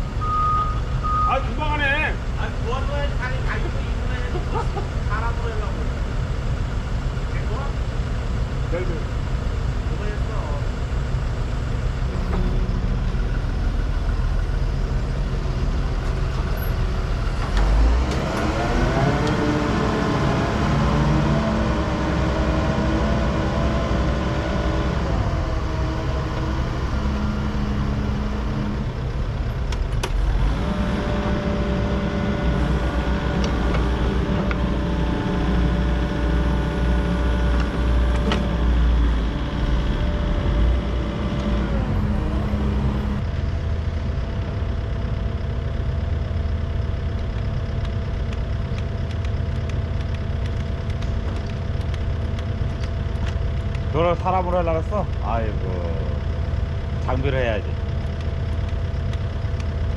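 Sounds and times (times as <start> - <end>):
excavator diesel engine running: 0.0 - 59.9
hydraulic whine: 16.1 - 43.4
sharp clicks: 47.2 - 53.9, 57.8 - 59.8.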